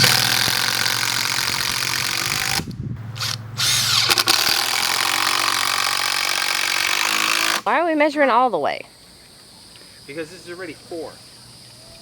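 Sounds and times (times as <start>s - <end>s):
power drill running: 0.0s - 2.6s, 3.2s - 7.7s.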